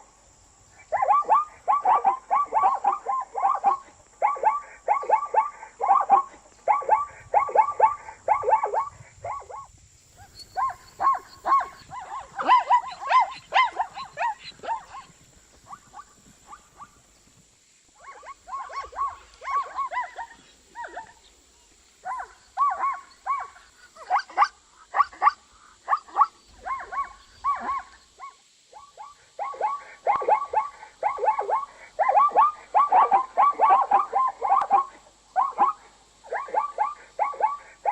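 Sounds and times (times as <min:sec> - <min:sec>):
zebra yelping barks: 0:00.8 - 0:17.0, 0:18.0 - 0:21.3, 0:22.0 - 0:37.9.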